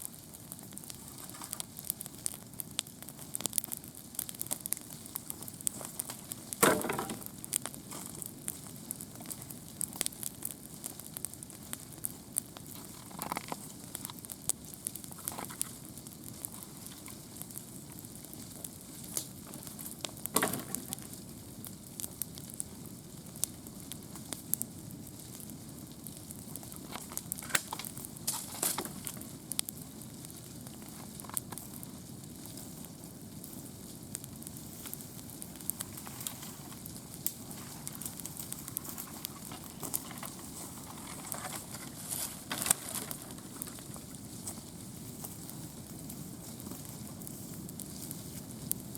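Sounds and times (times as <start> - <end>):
campfire crackling and popping: 0.0 - 48.9.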